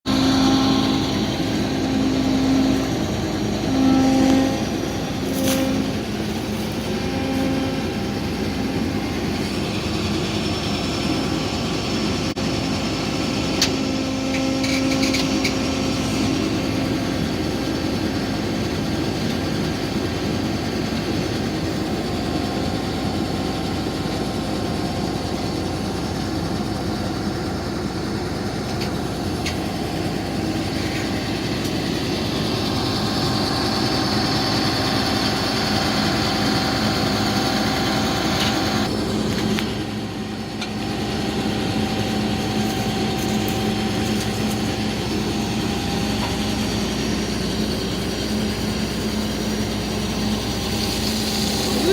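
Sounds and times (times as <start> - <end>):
diesel engine running: 0.0 - 51.9.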